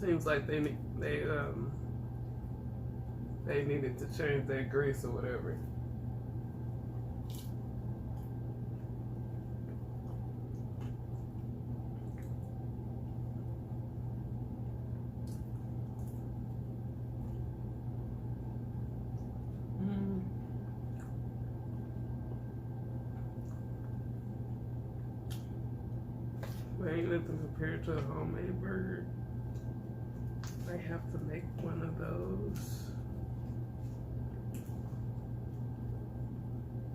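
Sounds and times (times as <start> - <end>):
low room hum: 0.0 - 36.9
person chewing: 7.2 - 13.2, 20.4 - 21.7
person humming: 19.8 - 20.4.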